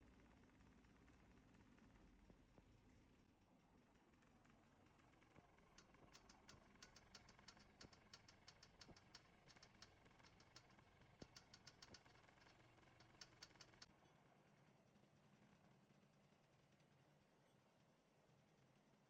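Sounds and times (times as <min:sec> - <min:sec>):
faint light clicking and rattling: 0:04.3 - 0:14.2.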